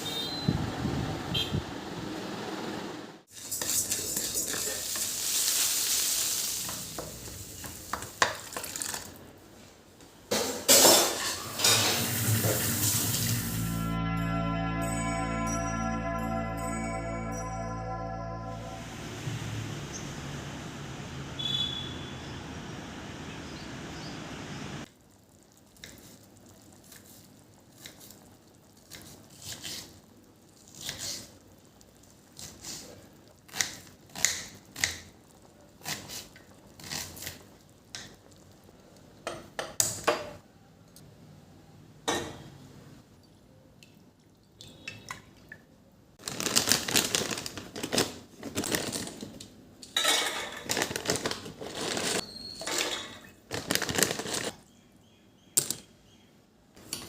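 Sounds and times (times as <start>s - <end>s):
kitchen utensils clinking: 10.3s - 12.8s, 49.9s - 54.5s.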